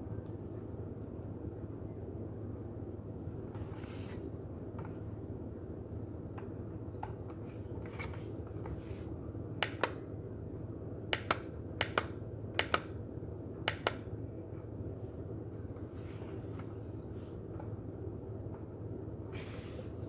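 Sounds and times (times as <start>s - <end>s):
plastic buttons clicking: 9.6s - 10.0s, 11.2s - 12.9s.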